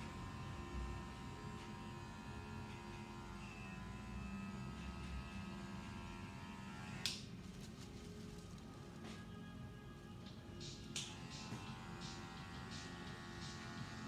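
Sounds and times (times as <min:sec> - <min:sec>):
electric hair clippers humming: 0:00.0 - 0:07.3, 0:11.0 - 0:14.0.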